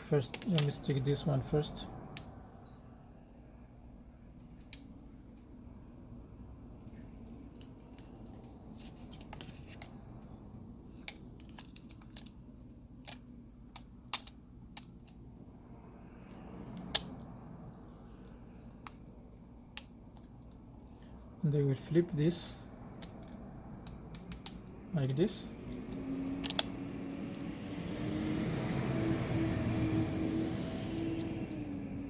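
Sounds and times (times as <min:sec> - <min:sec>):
small parts clicking and tapping: 0:00.2 - 0:00.9, 0:10.9 - 0:15.2, 0:16.1 - 0:21.3, 0:22.4 - 0:27.5.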